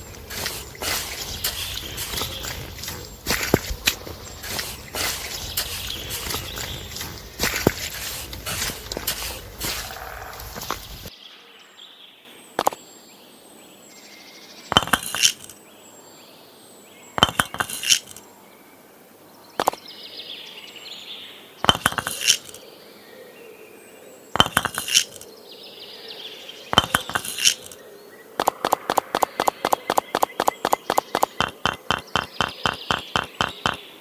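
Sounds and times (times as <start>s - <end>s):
small hard objects clinking: 0.0s - 11.1s, 14.7s - 15.6s, 17.2s - 18.2s, 21.7s - 22.6s, 24.4s - 25.2s, 26.8s - 27.8s
faint bird chirps: 0.0s - 34.0s.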